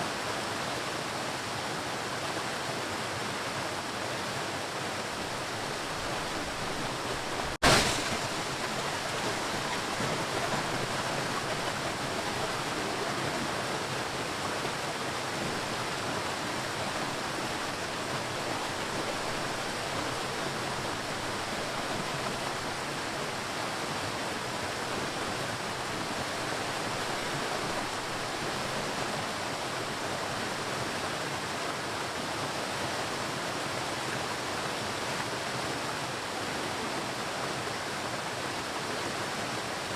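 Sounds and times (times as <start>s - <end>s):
ocean surf washing: 4.9s - 30.7s.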